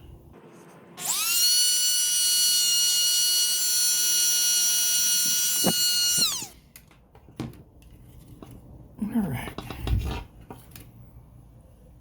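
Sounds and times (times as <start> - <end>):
rotary tool high-pitched whine: 1.0 - 6.6.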